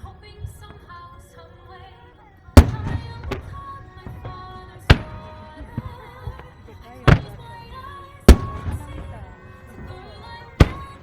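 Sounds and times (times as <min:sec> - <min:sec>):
firework bangs: 0:00.0 - 0:01.4, 0:02.6 - 0:11.0
music playing: 0:00.0 - 0:11.0.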